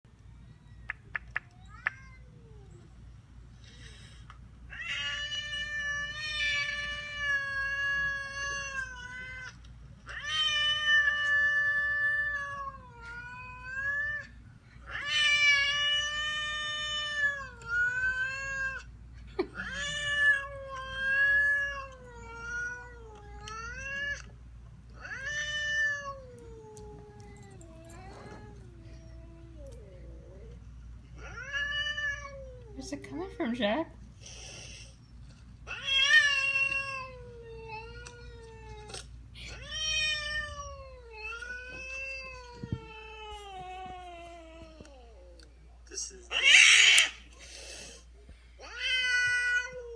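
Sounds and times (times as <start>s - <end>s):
cat yowling: 46.3s - 47.2s.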